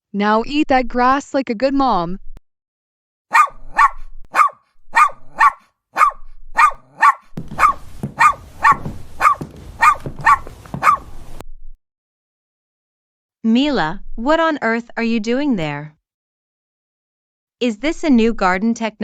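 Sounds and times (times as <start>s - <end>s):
dog barking: 3.3s - 11.4s.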